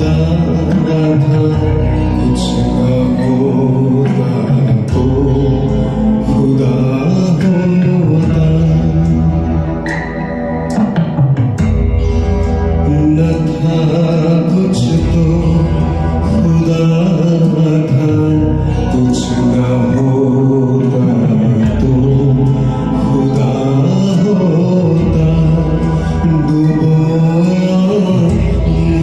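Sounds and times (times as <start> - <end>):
deep bass notes: 0.0 - 29.0.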